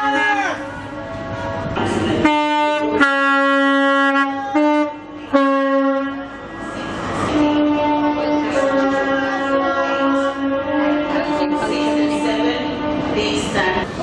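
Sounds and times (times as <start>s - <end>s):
train two-tone horn: 2.2s - 6.6s, 7.2s - 13.6s.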